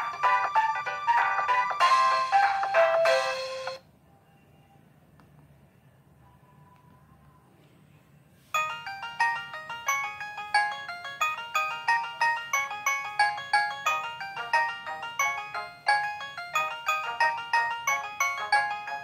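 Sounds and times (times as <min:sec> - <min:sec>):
synthesized ringtone melody: 0:00.0 - 0:03.8, 0:08.6 - 0:19.0.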